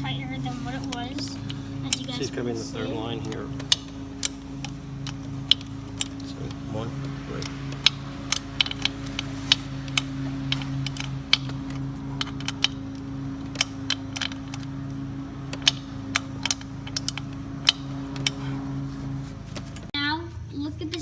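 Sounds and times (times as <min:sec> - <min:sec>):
steady low hum: 0:00.0 - 0:21.0
wrench metallic clicks: 0:07.4 - 0:14.7.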